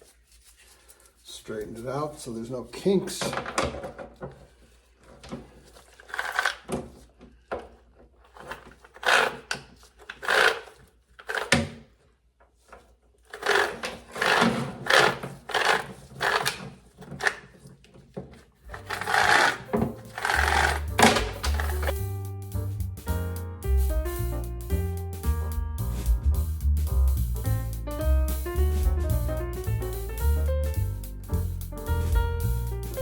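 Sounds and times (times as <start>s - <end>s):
bicycle chain clinking and rattling: 6.0s - 6.7s, 10.1s - 11.6s, 13.3s - 17.3s, 18.7s - 22.0s.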